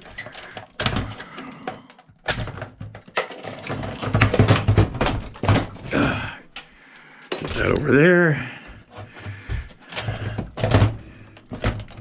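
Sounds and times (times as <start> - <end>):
plastic and metal parts clicking: 0.0 - 5.9.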